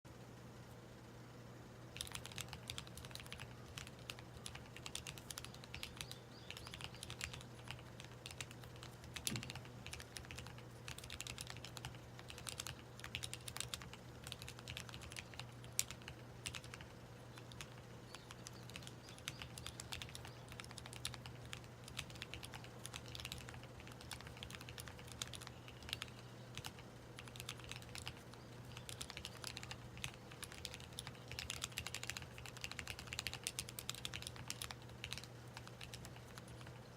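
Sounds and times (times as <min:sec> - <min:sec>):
faint steady hum: 0:00.1 - 0:36.9
mechanical keyboard key clacks: 0:02.0 - 0:16.8.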